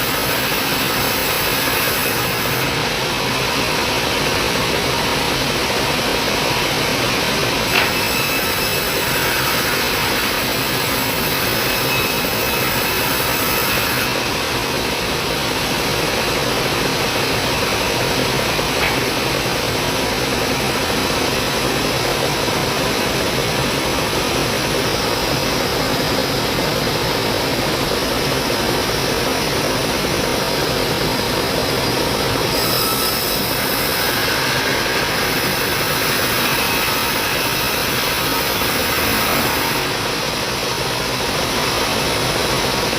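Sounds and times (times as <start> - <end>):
band saw cutting wood: 0.0 - 3.6, 7.0 - 22.0, 31.9 - 41.1.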